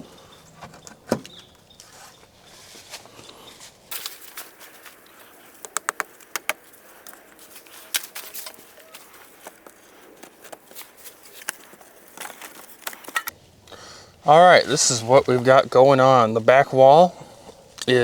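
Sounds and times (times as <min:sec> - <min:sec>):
faint rustling: 0:00.0 - 0:16.2
sharp cracks and clicks: 0:05.4 - 0:07.2.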